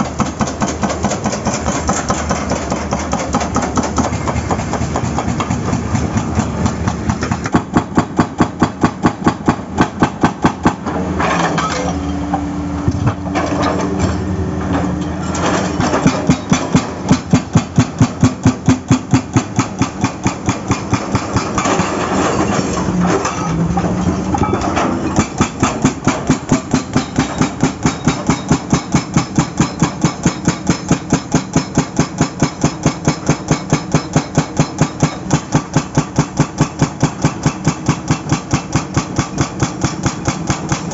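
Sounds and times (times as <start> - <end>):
hydraulic breaker hammering asphalt: 0.0 - 11.6, 15.5 - 22.5, 24.4 - 40.9
diesel engine running: 0.0 - 19.5.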